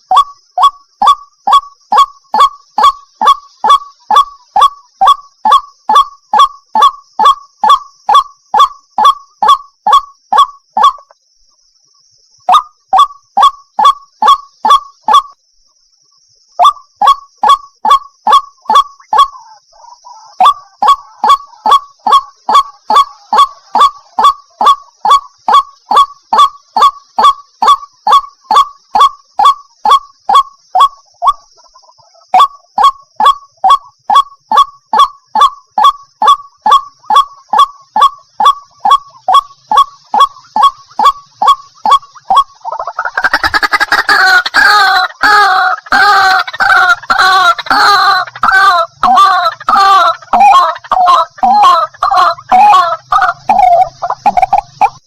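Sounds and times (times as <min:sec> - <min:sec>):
bird harsh calls: 0:16.6 - 0:55.0.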